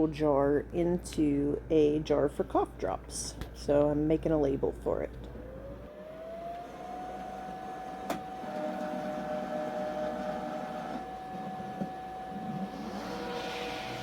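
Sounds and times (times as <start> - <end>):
cutting machine motor whine: 5.4 - 14.0.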